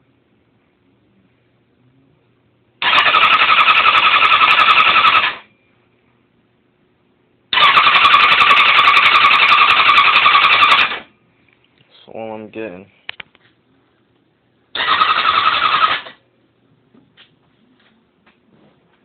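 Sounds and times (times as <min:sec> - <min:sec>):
motorcycle starter cranking engine: 0:02.8 - 0:05.4, 0:07.6 - 0:11.0, 0:14.8 - 0:16.2.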